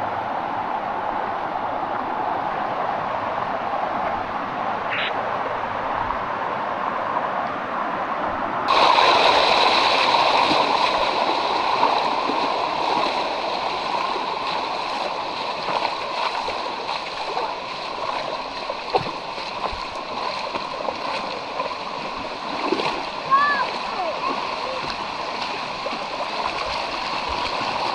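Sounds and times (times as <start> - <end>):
waterfall splashing over rocks: 8.7 - 27.9.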